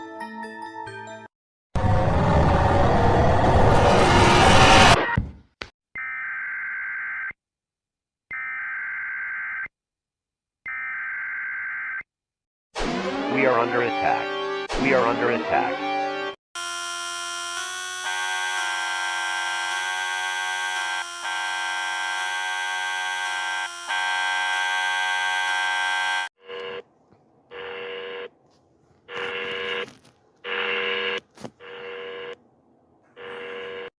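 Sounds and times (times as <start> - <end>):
electronic alarm chord: 16.6 - 26.8.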